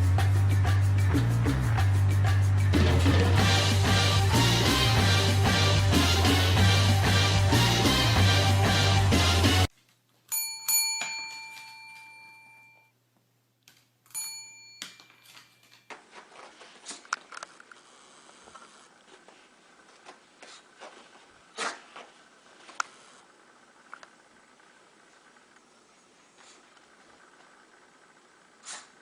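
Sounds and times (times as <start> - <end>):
metallic bell chime: 10.3 - 12.9, 14.1 - 15.7.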